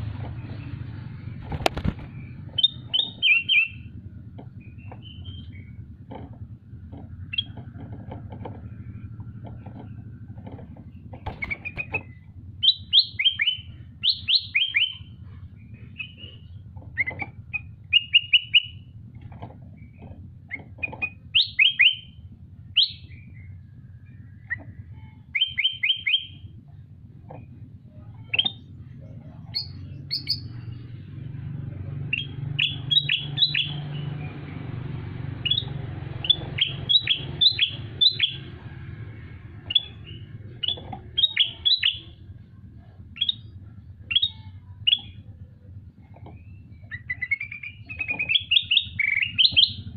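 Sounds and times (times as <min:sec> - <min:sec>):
songbird calling: 0:01.8 - 0:03.9, 0:04.6 - 0:05.8, 0:11.2 - 0:18.9, 0:19.7 - 0:26.4, 0:28.0 - 0:30.8, 0:32.0 - 0:34.2, 0:35.4 - 0:38.6, 0:39.6 - 0:42.2, 0:42.8 - 0:45.4, 0:46.0 - 0:49.9.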